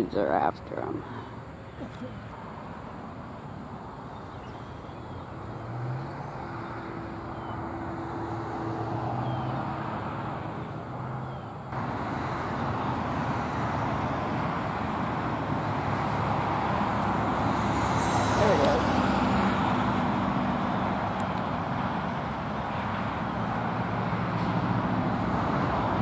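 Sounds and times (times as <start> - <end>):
vehicle engine and tyre noise: 0.0 - 26.0.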